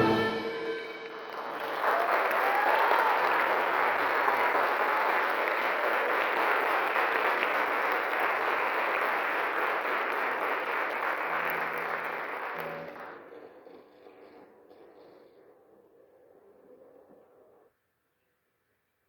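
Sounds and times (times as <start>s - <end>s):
audience applauding: 0.0s - 14.4s.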